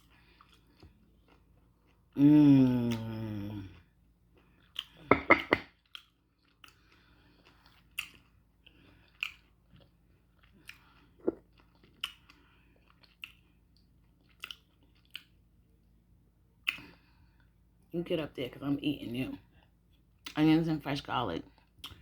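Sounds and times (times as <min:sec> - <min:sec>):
mouth chewing and smacking: 0:00.0 - 0:03.1, 0:03.7 - 0:05.1, 0:05.8 - 0:15.4, 0:16.6 - 0:17.4, 0:21.6 - 0:22.0.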